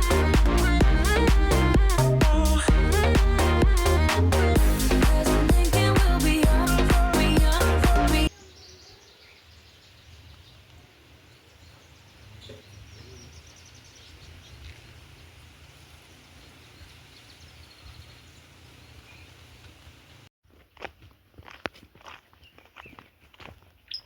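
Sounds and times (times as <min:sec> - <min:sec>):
steady low rumble: 0:00.0 - 0:08.3
birds chirping: 0:00.0 - 0:15.0, 0:15.9 - 0:20.2.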